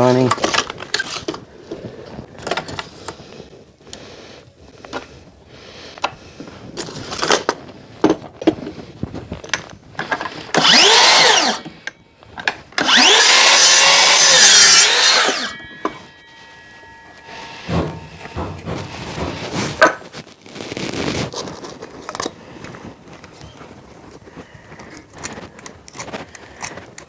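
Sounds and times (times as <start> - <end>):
electric saw cutting timber: 10.0 - 11.9, 12.8 - 19.9
timber knocking and clattering: 12.8 - 20.3.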